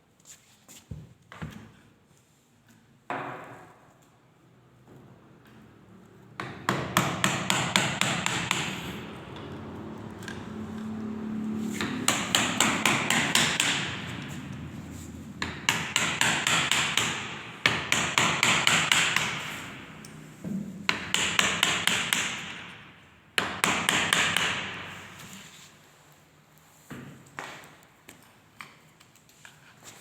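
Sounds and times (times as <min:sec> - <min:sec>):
hammer tapping: 0:06.4 - 0:09.0, 0:11.8 - 0:14.4, 0:15.4 - 0:19.6, 0:20.9 - 0:22.7.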